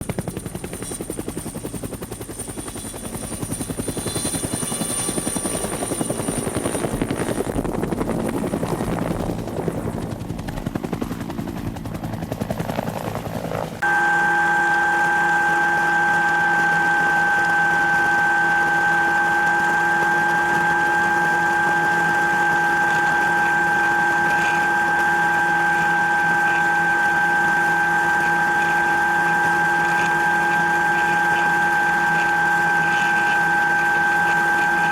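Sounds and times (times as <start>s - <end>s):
helicopter engine and rotor: 0.0s - 34.9s
steady tonal whine: 13.8s - 34.9s.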